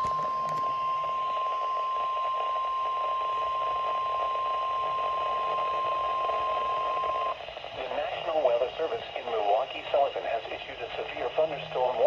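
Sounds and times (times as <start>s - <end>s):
steady alarm tone: 0.0s - 7.6s
radio static hiss: 0.0s - 12.0s.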